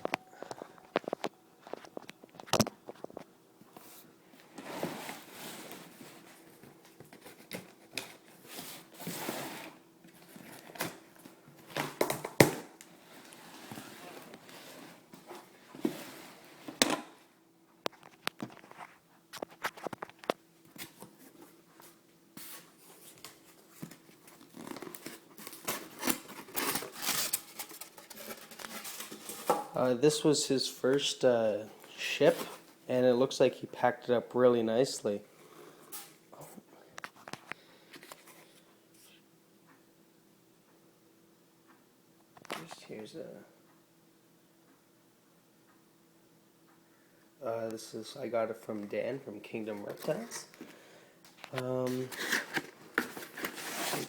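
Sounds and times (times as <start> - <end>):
cardboard crinkling and rustling: 17.9 - 30.4, 48.8 - 50.7, 51.3 - 54.0
packing tape tearing: 24.4 - 29.4, 51.8 - 54.0.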